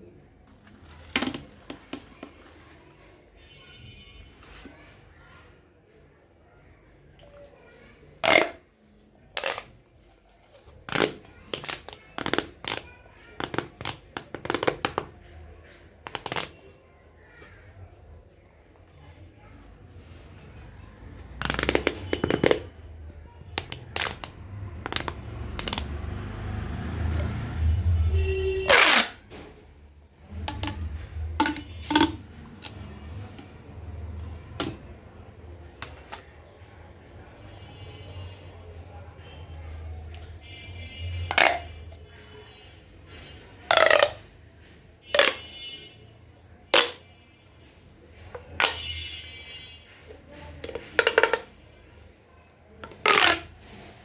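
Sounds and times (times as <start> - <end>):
plastic pop tube popping: 1.0 - 2.4, 8.2 - 8.6, 9.4 - 9.7, 10.8 - 15.2, 16.0 - 16.6, 21.2 - 22.8, 23.5 - 26.0, 28.2 - 29.4, 30.3 - 33.6, 34.4 - 35.0, 35.8 - 36.3, 41.2 - 41.7, 43.7 - 44.3, 45.1 - 45.8, 46.7 - 47.1, 48.4 - 49.1, 50.6 - 51.5, 52.8 - 53.6
crunchy clicks of pop tube: 8.2 - 8.6, 9.4 - 9.7, 16.0 - 16.6, 28.7 - 29.2, 30.4 - 32.8, 43.7 - 44.2, 45.1 - 45.6, 46.8 - 47.0, 52.8 - 53.5
sharp pops of pop tube: 30.4 - 32.8, 46.8 - 47.0.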